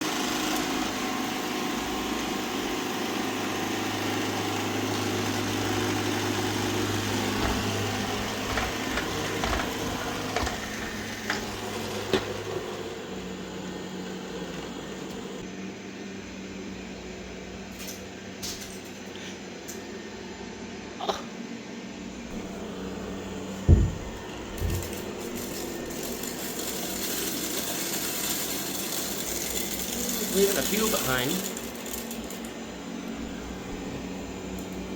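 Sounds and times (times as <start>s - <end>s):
robot vacuum motor hum: 0.1s - 15.4s, 22.2s - 34.9s
loud knock: 23.6s - 24.8s.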